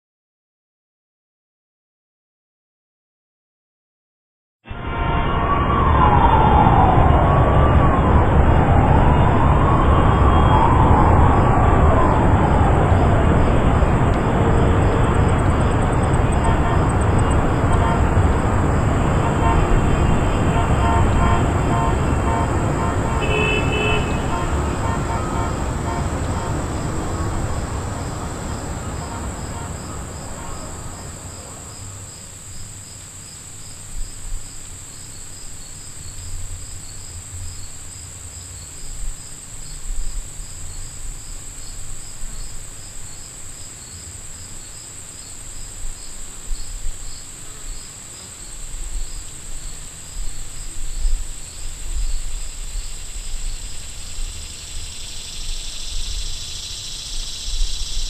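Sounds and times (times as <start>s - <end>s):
loud broad noise: 4.7s - 31.9s
low rumbles: 5.4s - 32.0s
crickets chirping: 7.9s - 58.0s
continuous high buzz: 8.2s - 58.0s.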